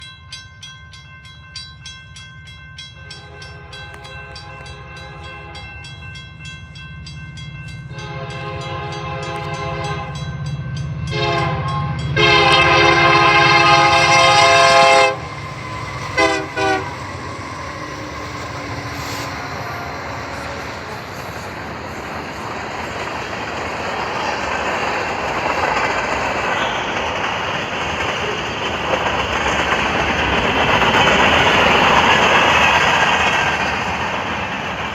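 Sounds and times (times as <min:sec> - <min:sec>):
crossing bell ringing: 0:00.0 - 0:34.4
train rumbling on rails: 0:00.0 - 0:34.9
locomotive horn: 0:07.9 - 0:10.2, 0:11.1 - 0:15.3, 0:16.0 - 0:17.1.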